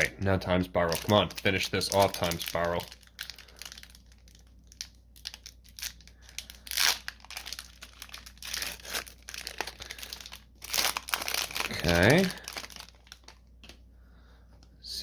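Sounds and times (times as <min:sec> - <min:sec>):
foil wrapper crinkling and tearing: 0:00.0 - 0:13.5.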